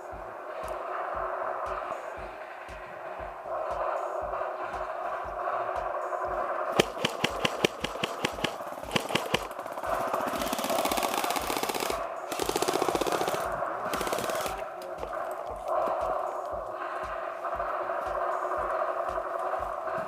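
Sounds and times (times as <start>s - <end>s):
airsoft full-auto bursts: 6.8s - 14.7s.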